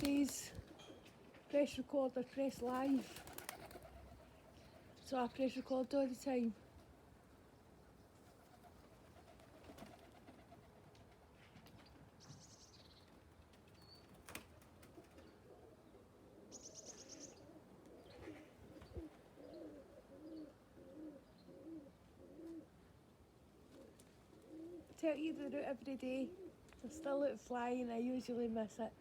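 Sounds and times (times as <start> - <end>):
pigeon cooing: 15.0 - 22.8, 23.6 - 25.0, 26.2 - 27.3.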